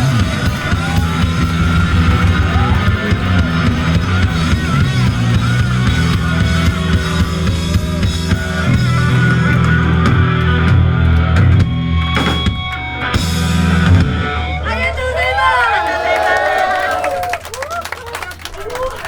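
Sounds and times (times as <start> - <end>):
live rock band playing: 0.0 - 15.2.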